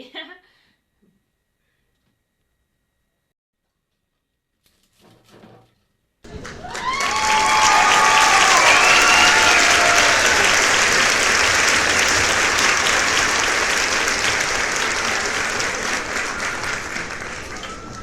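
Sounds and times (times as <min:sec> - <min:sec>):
crowd applauding: 0:06.3 - 0:18.0.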